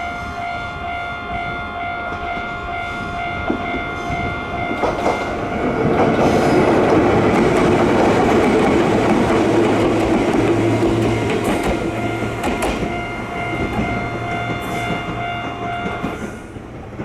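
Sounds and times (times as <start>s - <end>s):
train rumble and wheel clatter: 0.0s - 17.0s
level crossing alarm: 9.8s - 16.6s.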